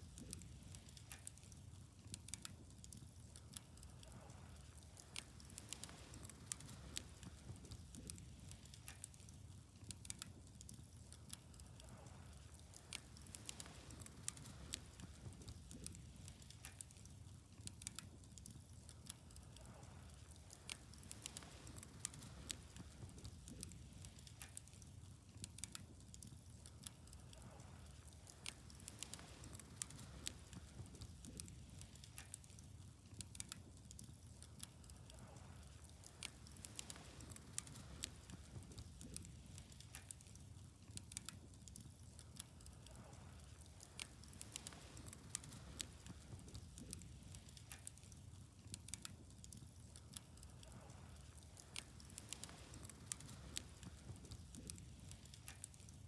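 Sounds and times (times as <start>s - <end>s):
hiss of flames: 0.0s - 56.0s
wood fire crackling: 0.0s - 56.0s.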